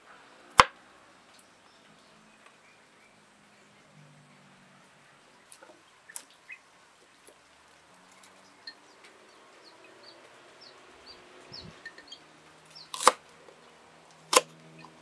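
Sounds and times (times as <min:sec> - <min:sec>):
small bird chirping: 0:05.2 - 0:15.0.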